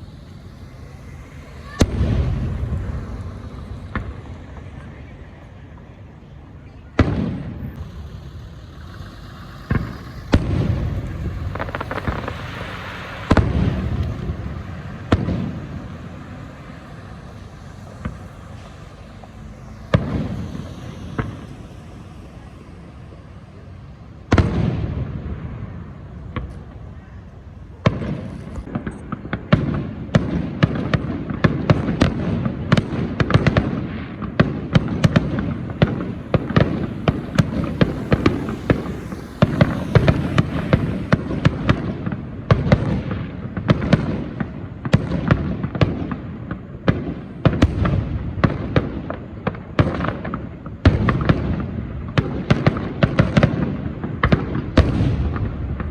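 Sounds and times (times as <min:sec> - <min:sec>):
loud echoing bangs: 0:00.0 - 0:05.7, 0:06.9 - 0:22.5, 0:24.2 - 0:26.8, 0:27.8 - 0:55.9
rapid crackling pops: 0:07.0 - 0:21.5.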